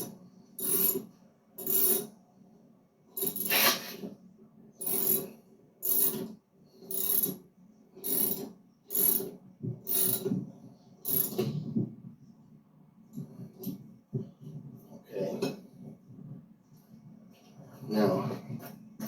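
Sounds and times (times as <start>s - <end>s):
socket ratchet clicking: 9.9s - 10.2s, 11.1s - 11.4s.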